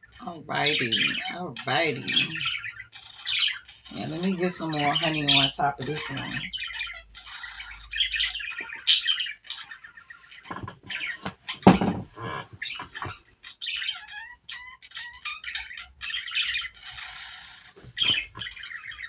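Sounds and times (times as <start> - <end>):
bird chirping and squawking: 0.0 - 19.0
thump: 11.6 - 12.3.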